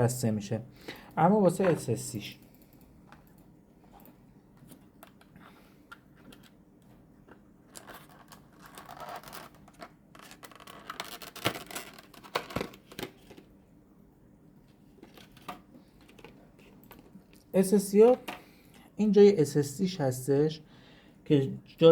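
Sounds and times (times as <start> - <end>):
clicks and scrapes of small parts: 7.3 - 13.4.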